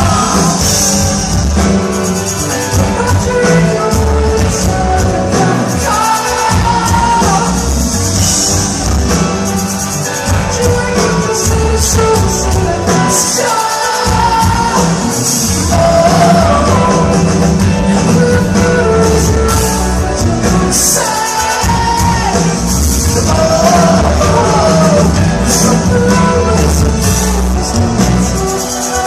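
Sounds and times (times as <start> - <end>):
person singing: 0.0 - 29.0
rock band playing live: 0.0 - 29.0.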